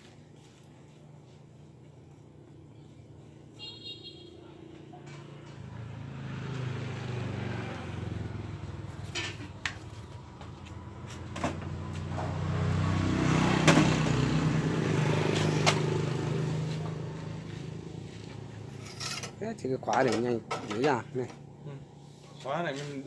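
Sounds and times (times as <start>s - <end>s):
vehicle engine passing by: 5.2s - 18.8s.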